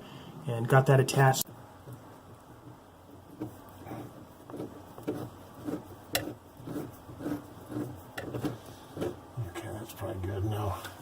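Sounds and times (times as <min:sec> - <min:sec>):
drain nut scraping as tightened: 0:03.4 - 0:09.2.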